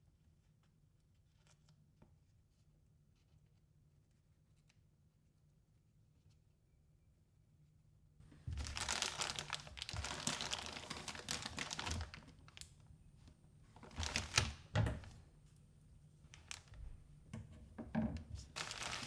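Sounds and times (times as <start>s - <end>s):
plastic packaging crinkling: 8.3s - 12.8s, 13.7s - 15.2s, 16.3s - 17.1s, 18.2s - 19.0s
light clicks and knocks: 13.8s - 15.2s, 16.3s - 19.0s.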